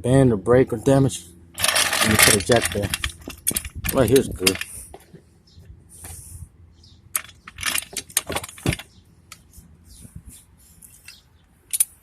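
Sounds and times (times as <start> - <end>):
car jack metallic clinks: 1.6 - 4.8, 7.1 - 9.0.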